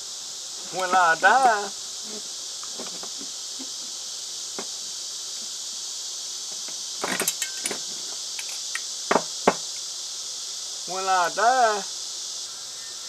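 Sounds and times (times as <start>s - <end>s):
katydid chorus: 0.0s - 13.0s
hand tools clicking and rattling: 6.6s - 8.9s.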